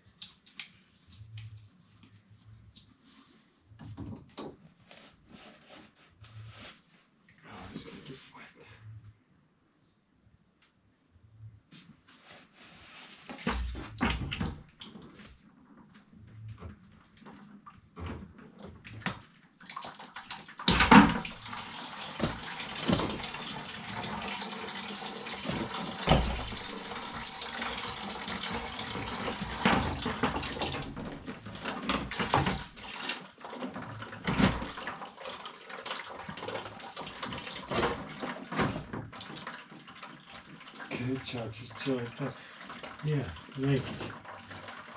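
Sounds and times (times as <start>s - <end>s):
water running from pipe: 19.6s - 44.9s.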